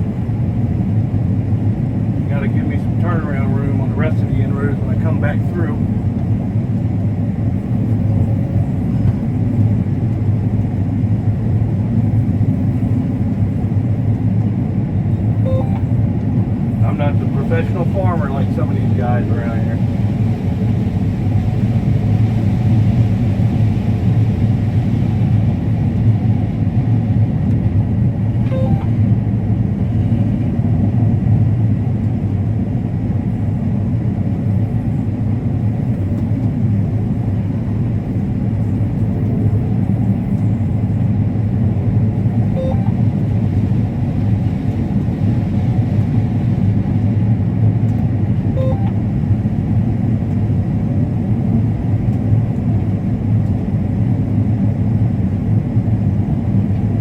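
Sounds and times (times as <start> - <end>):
combine harvester droning: 15.1 - 20.0, 28.0 - 29.5, 37.4 - 47.0, 48.0 - 49.8
short faint beeps: 15.5 - 16.0, 28.5 - 29.0, 42.6 - 43.0, 48.6 - 49.0.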